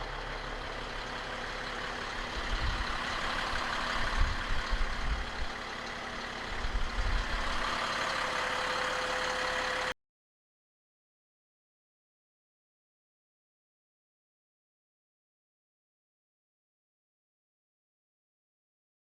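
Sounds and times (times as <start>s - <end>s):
diesel truck engine running: 0.0s - 10.0s.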